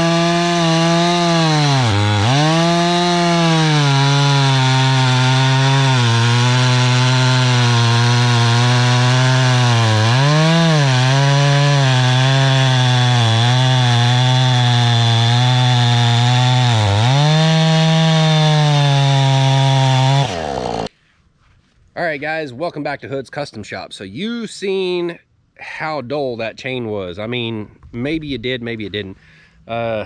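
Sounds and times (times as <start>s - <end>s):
chainsaw cutting wood: 0.0s - 20.9s.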